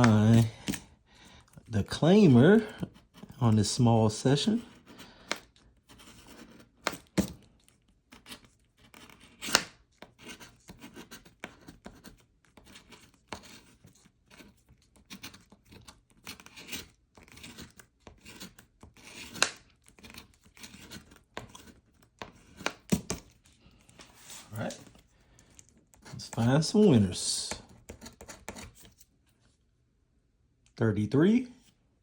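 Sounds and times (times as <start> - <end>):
scratching lottery ticket: 1.4 - 23.9.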